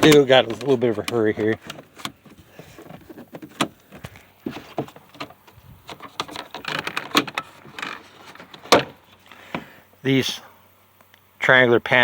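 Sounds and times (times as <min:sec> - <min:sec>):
plastic trim clicks and rubbing: 0:00.0 - 0:09.0.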